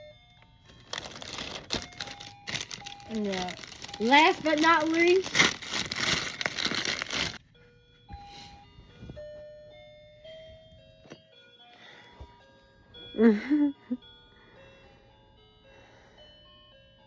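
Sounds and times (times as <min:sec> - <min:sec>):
tinkling chime melody: 0:00.0 - 0:17.0
wrapping paper crinkling: 0:00.7 - 0:07.4.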